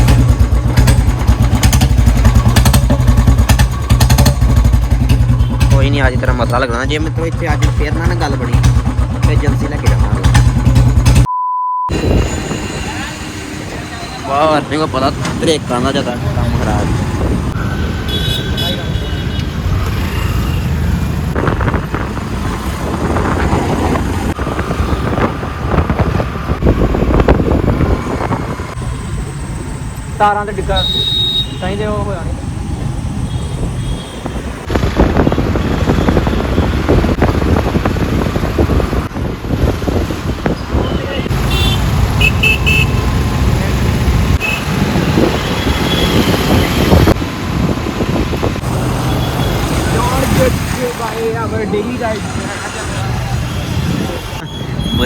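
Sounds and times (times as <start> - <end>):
motorcycle engine rumbling: 0.0 - 11.3, 11.9 - 55.0
motorcycle engine running: 0.0 - 11.3
wind buffeting microphone: 16.5 - 18.0, 20.9 - 28.8, 32.2 - 42.2, 43.1 - 50.8.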